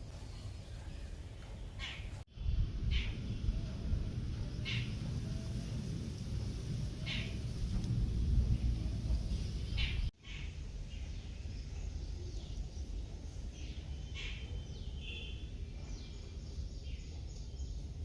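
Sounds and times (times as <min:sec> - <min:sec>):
songbirds chirping: 0:00.0 - 0:18.0
steady low rumble: 0:02.2 - 0:10.9.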